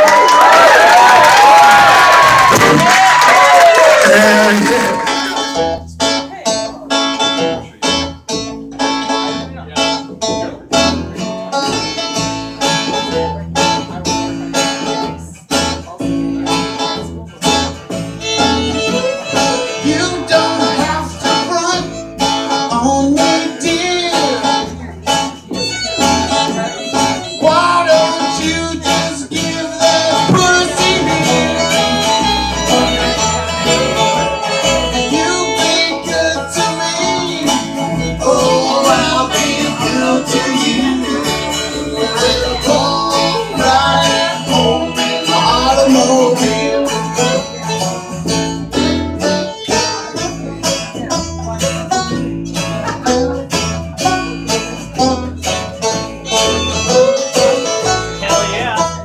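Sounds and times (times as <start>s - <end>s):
bass line: 0.0s - 59.0s
guitar: 0.0s - 59.0s
steady drum beat: 24.4s - 49.1s.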